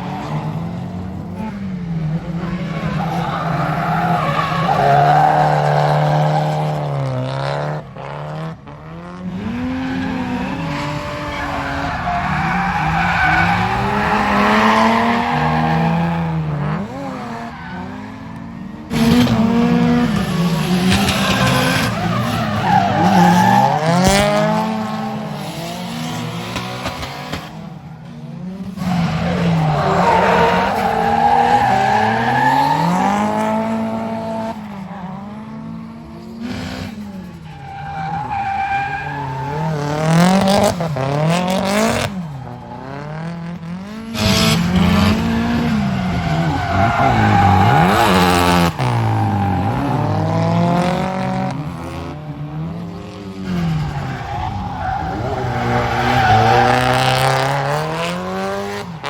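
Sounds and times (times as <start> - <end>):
car engines revving: 0.0 - 59.0
tyres squealing: 9.9 - 18.1, 29.0 - 33.4, 45.8 - 50.3.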